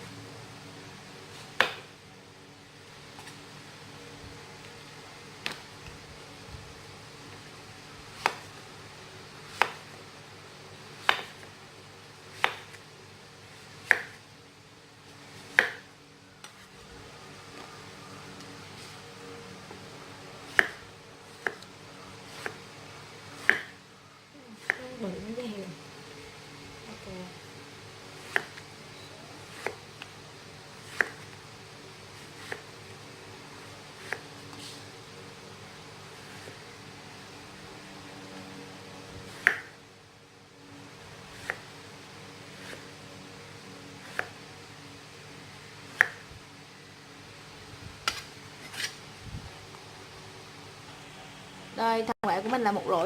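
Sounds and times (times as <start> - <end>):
low steady hum: 0.0 - 53.0
knife slicing fruit: 8.1 - 8.6, 9.4 - 10.0, 11.0 - 11.5, 12.3 - 12.8, 13.6 - 14.2, 15.4 - 16.7, 20.4 - 21.7, 22.3 - 22.6, 23.3 - 23.8, 24.6 - 25.0, 28.2 - 28.6, 29.4 - 29.9, 30.8 - 31.4, 32.2 - 32.8, 34.0 - 34.6, 39.2 - 39.8, 41.3 - 41.7, 42.5 - 42.9, 44.0 - 44.4, 45.9 - 46.3, 48.0 - 49.0.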